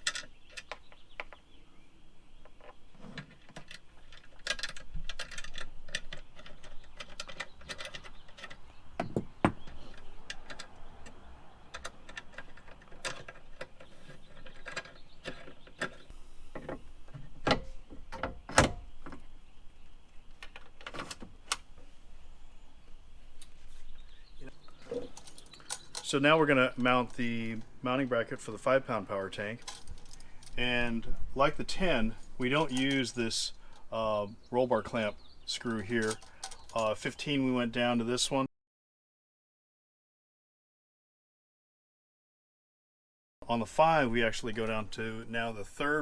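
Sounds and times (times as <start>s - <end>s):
metal clicks and clinks: 25.0s - 26.2s, 36.0s - 36.9s.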